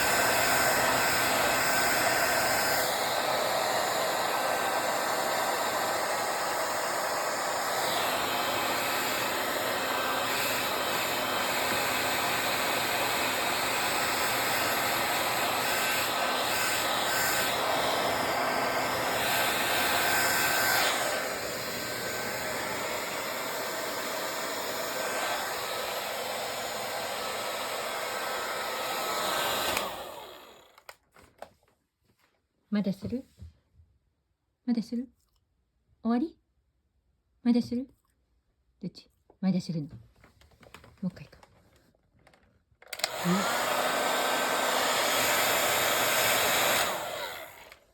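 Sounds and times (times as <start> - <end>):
hair dryer blowing: 0.0 - 30.9, 42.9 - 47.9
hair dryer switch off: 0.0 - 30.9, 42.9 - 47.9.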